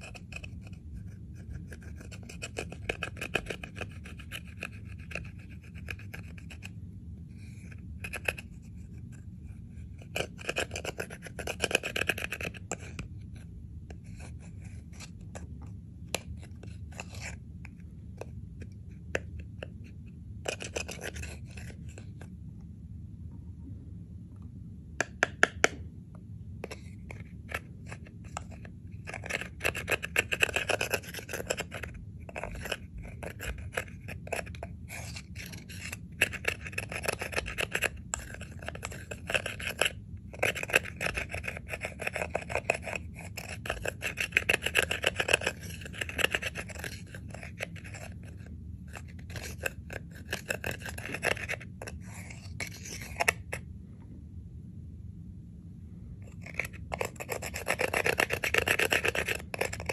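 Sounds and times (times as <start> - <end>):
low steady hum: 0.0 - 59.9.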